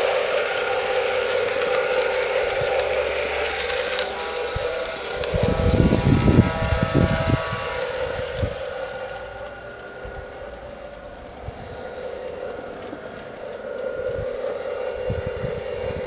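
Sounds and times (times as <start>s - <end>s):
model locomotive hum: 0.0s - 16.0s
wind rumble on microphone: 4.4s - 16.0s.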